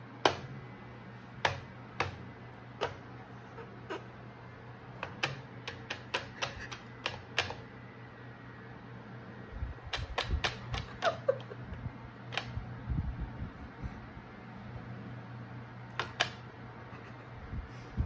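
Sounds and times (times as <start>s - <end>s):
paw tapping a hair dryer: 0.3s - 0.5s, 5.0s - 7.6s, 10.0s - 11.5s, 16.0s - 16.4s.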